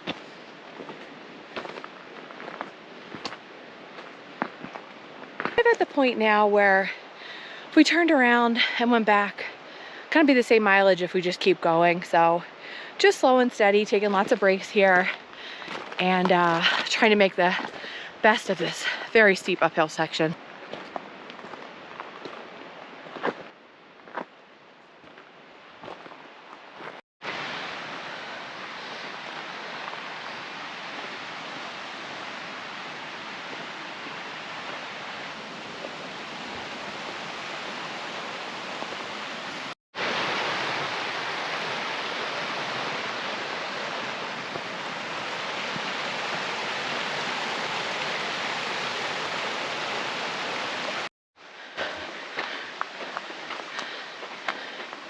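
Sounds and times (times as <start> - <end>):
creek water rushing: 0.0 - 23.2, 26.7 - 55.0.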